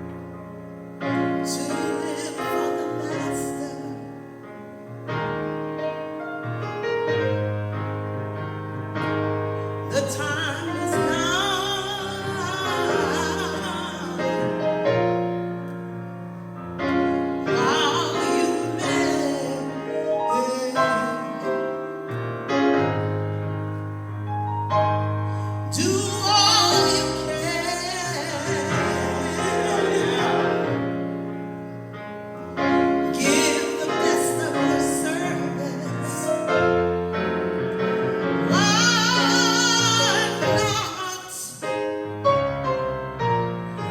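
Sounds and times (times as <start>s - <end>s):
person singing gospel: 1.4s - 4.2s, 9.7s - 15.5s, 16.9s - 22.1s, 25.4s - 31.4s, 32.7s - 36.9s, 38.4s - 41.8s.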